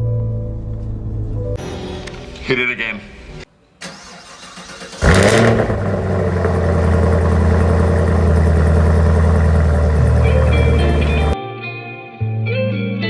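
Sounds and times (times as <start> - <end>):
car engine starting and idling: 3.8 - 11.4.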